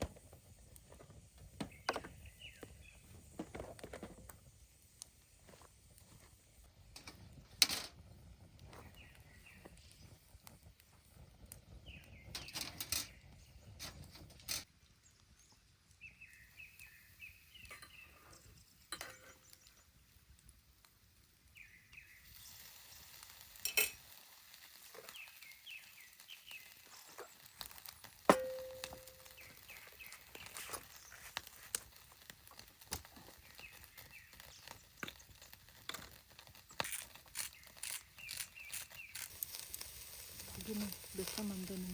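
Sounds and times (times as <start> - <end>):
small birds chirping: 0.8 - 3.3, 8.6 - 41.9
camp cookware clinking: 17.6 - 19.7, 23.5 - 25.4, 28.1 - 30.9.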